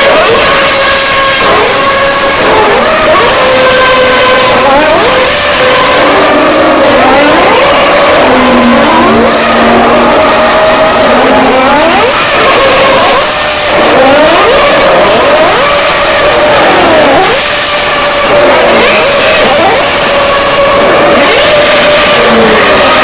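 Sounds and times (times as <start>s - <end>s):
racing cars passing at high revs: 0.0s - 23.0s.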